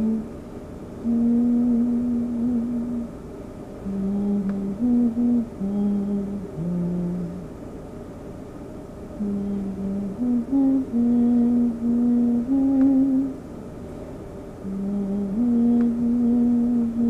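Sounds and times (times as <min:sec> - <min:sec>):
person humming a slow tune: 0:00.0 - 0:00.4, 0:01.0 - 0:03.2, 0:03.8 - 0:07.6, 0:09.2 - 0:13.4, 0:14.6 - 0:17.0.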